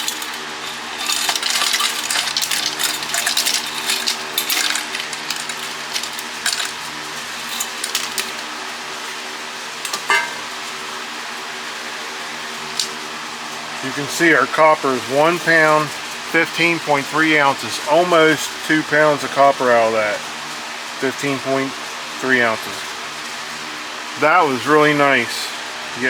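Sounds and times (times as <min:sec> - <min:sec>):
scrap copper clinking into a can: 0:00.0 - 0:08.5, 0:09.8 - 0:10.6
fan hum: 0:00.0 - 0:26.0.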